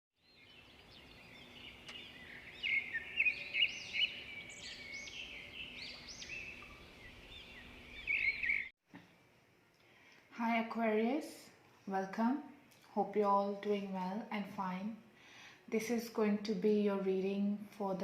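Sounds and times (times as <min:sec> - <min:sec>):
birds chirping and singing: 0:00.2 - 0:08.7.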